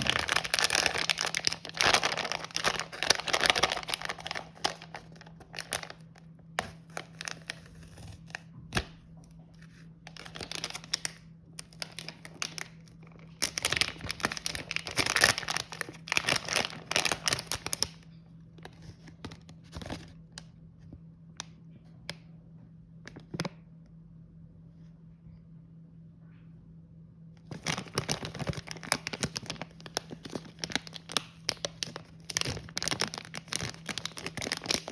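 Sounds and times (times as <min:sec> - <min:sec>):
snack packaging crinkling and tearing: 0:00.0 - 0:08.9, 0:10.1 - 0:18.0, 0:27.4 - 0:34.9
faint low hum: 0:00.0 - 0:34.9.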